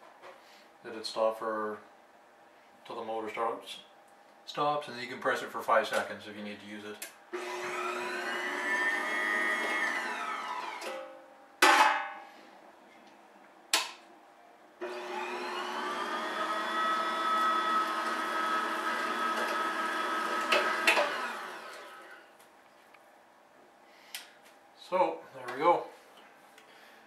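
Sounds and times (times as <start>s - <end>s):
meat grinder motor whining: 7.4s - 10.9s, 14.8s - 22.2s.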